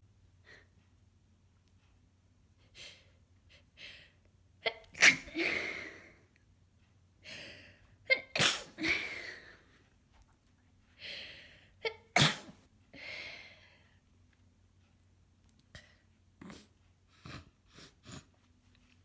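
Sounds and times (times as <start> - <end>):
woman sneezing: 4.6 - 5.8, 8.1 - 9.2, 11.9 - 12.6.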